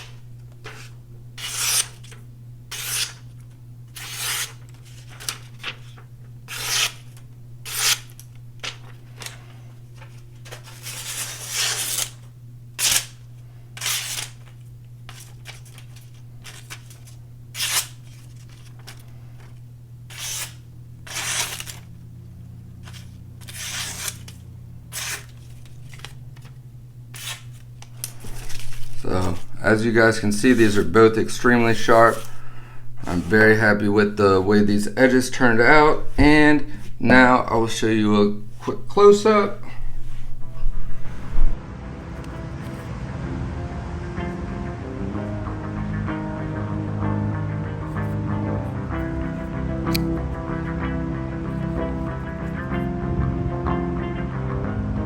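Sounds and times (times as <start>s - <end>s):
knife slicing paper: 0.0s - 9.4s, 10.0s - 19.1s, 20.1s - 21.9s, 22.8s - 26.5s, 27.1s - 32.4s
low hum: 0.0s - 55.0s.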